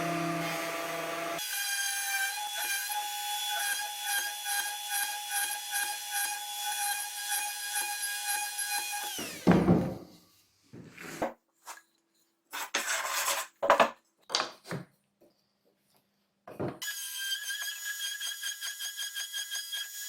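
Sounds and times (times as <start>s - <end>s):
heavy wooden thump: 9.5s - 10.0s
scraping and rubbing on wood: 12.5s - 14.0s.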